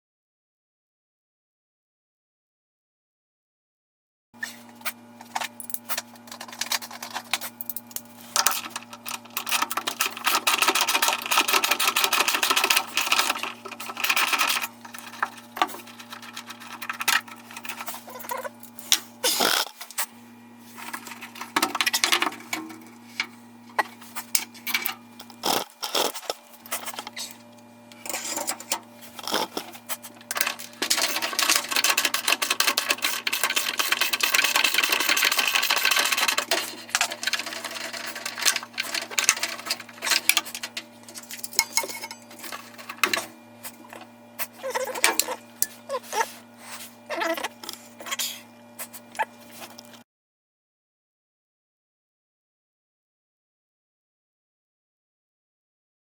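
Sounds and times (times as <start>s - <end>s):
steady low hum: 4.5s - 50.0s
rapid mechanical clicking and rattling: 5.3s - 20.0s, 28.0s - 45.7s.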